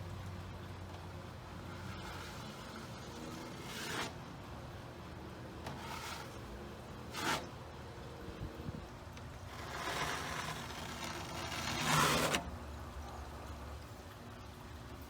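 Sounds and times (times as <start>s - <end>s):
knife scraping drywall texture: 1.7s - 4.2s, 5.7s - 7.6s, 9.5s - 12.5s.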